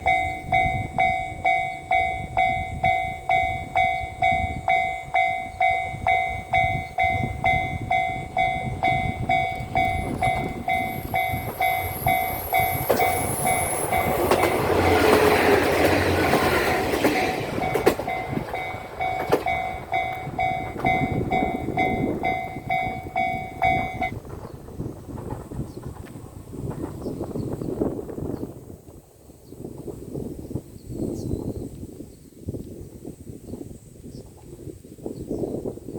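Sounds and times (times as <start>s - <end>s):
level crossing warning bell: 0.0s - 24.2s
wheels clacking over rails: 0.0s - 27.6s
diesel train passing: 0.0s - 30.2s.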